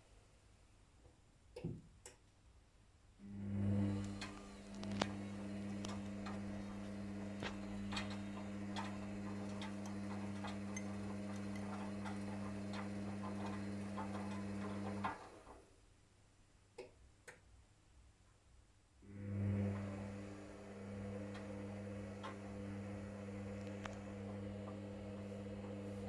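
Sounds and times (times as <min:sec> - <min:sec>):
washing machine drum motor hum: 0:03.4 - 0:15.5, 0:19.1 - 0:26.0.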